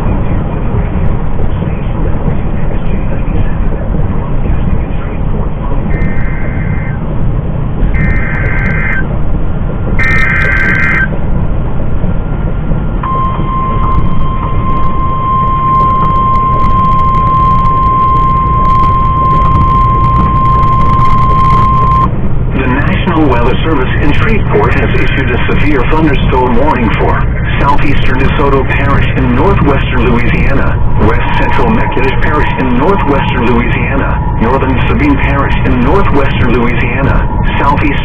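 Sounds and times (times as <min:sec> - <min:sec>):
truck road rumble: 0:00.0 - 0:38.0
buzzy data bursts: 0:05.9 - 0:07.0, 0:07.9 - 0:09.0, 0:10.0 - 0:11.1
steady warning alarm tone: 0:07.8 - 0:09.1, 0:09.9 - 0:11.2, 0:12.0 - 0:38.0.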